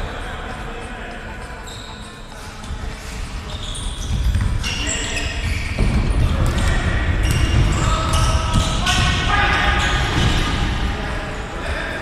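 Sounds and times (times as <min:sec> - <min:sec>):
shoes squeaking: 0:01.2 - 0:10.7.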